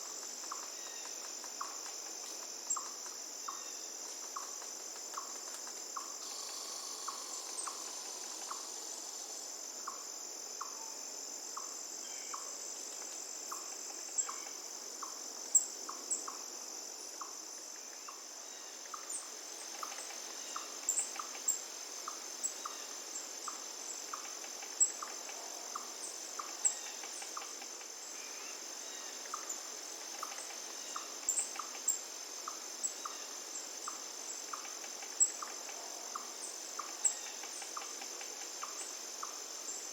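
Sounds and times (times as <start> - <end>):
insect chorus: 0.0 - 39.9
river water hiss: 4.2 - 10.6, 12.8 - 39.9.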